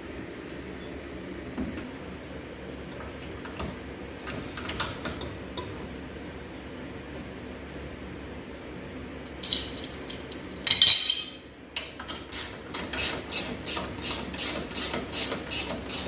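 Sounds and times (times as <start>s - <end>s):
metal parts clanking: 9.4s - 11.5s
ratchet wrench clicking: 12.3s - 16.0s.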